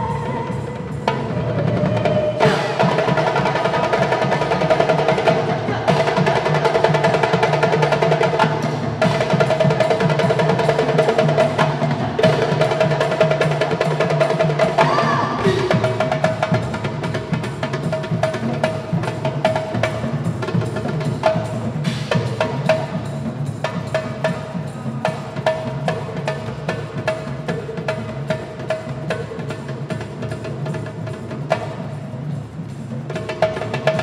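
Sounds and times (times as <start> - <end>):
percussion ensemble playing: 0.0 - 34.0.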